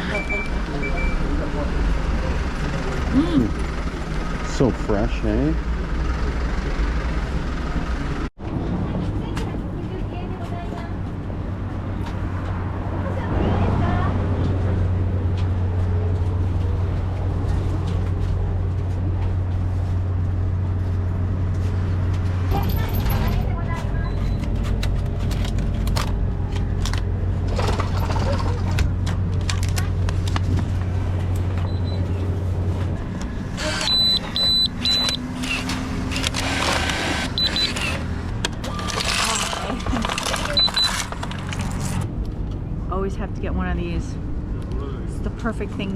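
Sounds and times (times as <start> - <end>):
vehicle engine rumble: 0.0 - 45.9
high electronic beeps: 33.8 - 35.2, 37.4 - 37.8.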